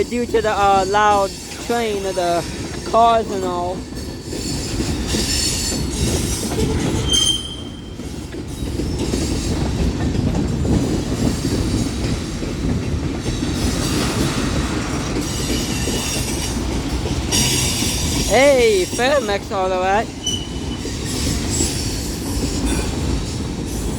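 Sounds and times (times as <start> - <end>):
train wheels rumbling on rails: 0.0 - 23.9
high-pitched wheel squeal: 7.0 - 7.9.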